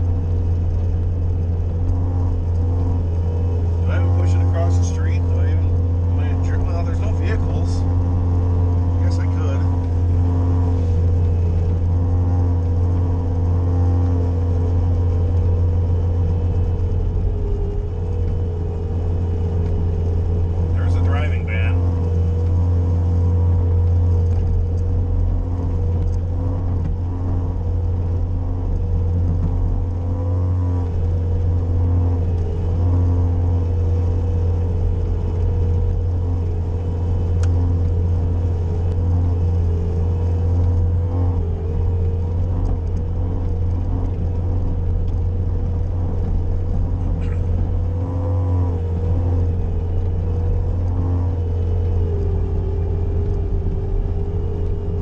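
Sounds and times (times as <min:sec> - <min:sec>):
skid-steer engine running: 0:00.0 - 0:55.0.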